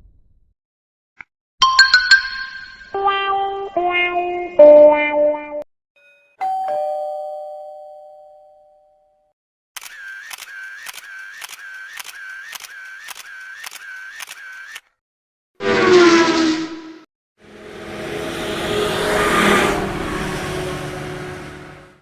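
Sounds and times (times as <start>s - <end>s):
ding-dong chime: 1.6s - 2.9s, 6.0s - 9.3s.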